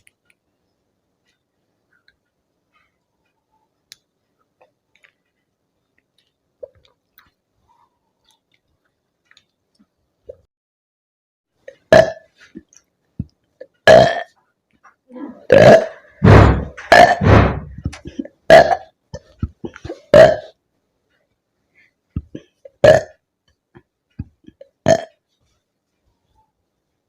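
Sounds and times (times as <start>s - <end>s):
woman burping: 11.9s - 12.2s, 13.9s - 14.3s, 15.2s - 16.2s, 16.9s - 17.3s, 18.0s - 18.9s, 19.6s - 20.6s, 22.3s - 23.2s, 24.5s - 25.1s.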